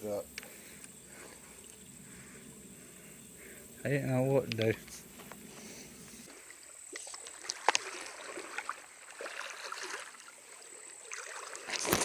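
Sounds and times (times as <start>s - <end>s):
water sloshing in a creek: 4.9s - 12.0s.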